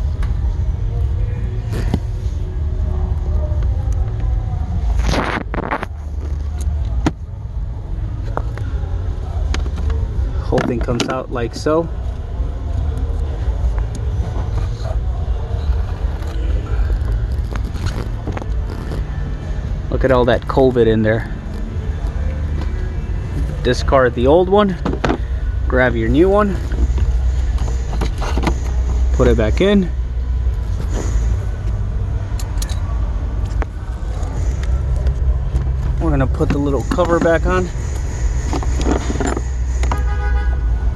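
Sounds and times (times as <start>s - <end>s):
steady low rumble: 0.0s - 40.9s
plastic clicks and scrapes: 38.5s - 40.0s.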